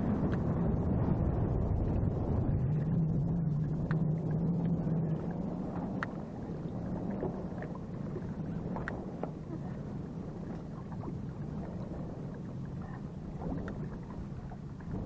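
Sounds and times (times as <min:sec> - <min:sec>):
outboard motor humming: 0:00.0 - 0:15.0
water washing: 0:03.5 - 0:15.0.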